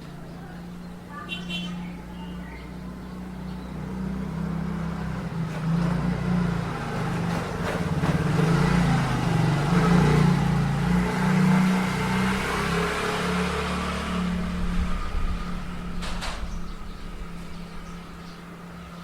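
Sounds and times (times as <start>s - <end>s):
vehicle engine running: 0.0s - 19.0s.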